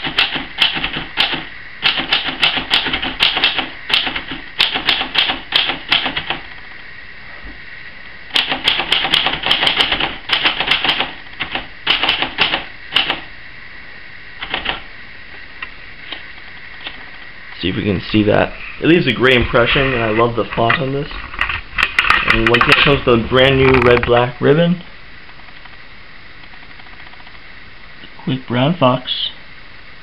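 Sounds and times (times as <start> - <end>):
typewriter key strikes: 0.0 - 6.4, 8.3 - 13.2.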